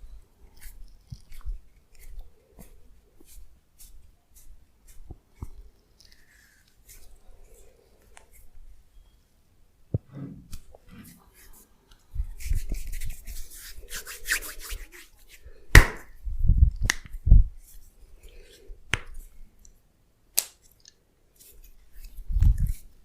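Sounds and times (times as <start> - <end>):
hands rubbing and tapping on body: 12.3 - 16.1.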